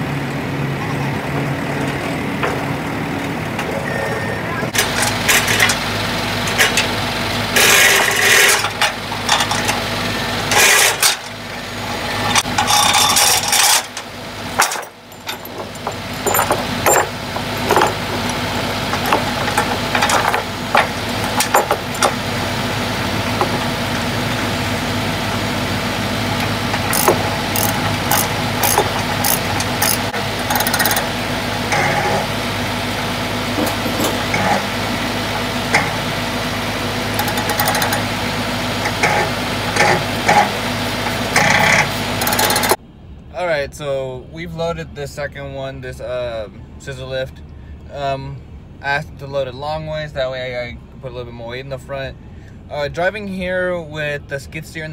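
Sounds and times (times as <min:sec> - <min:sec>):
engine running: 0:00.0 - 0:54.9
metallic rattling and clanking: 0:04.7 - 0:24.8, 0:26.3 - 0:32.4, 0:33.4 - 0:42.8.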